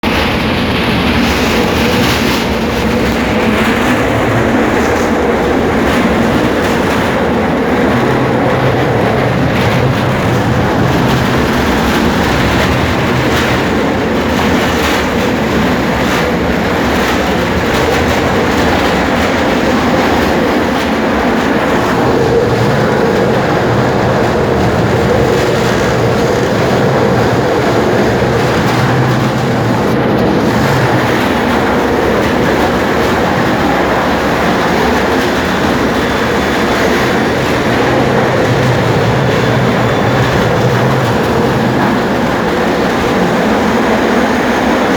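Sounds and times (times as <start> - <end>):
tram wheels rumbling on rail: 0.0 - 44.9
wheels knocking and clacking: 0.0 - 44.9.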